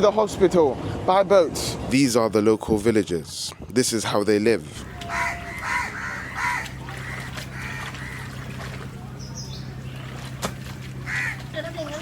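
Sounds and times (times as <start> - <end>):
crows cawing: 5.0 - 8.6, 11.0 - 11.4.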